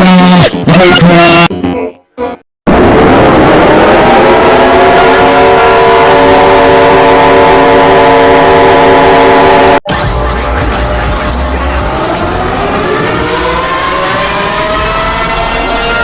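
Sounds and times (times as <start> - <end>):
air-raid siren: 2.7 - 16.0
low rough sound: 9.9 - 15.9.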